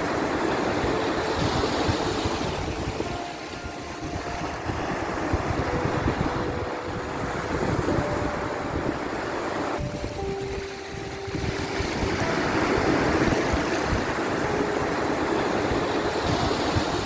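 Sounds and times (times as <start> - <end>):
sea waves washing: 0.0 - 17.0
soft long-held music notes: 0.0 - 17.0.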